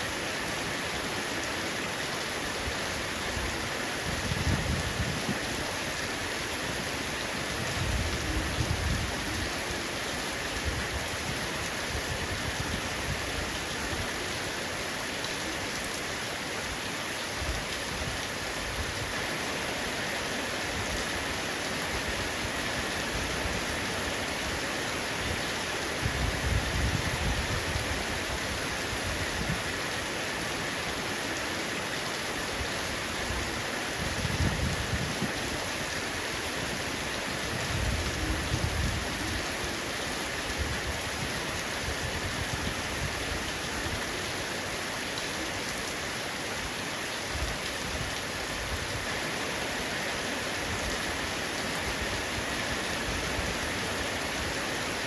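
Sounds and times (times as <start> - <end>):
heavy rain on a roof: 0.0 - 55.0.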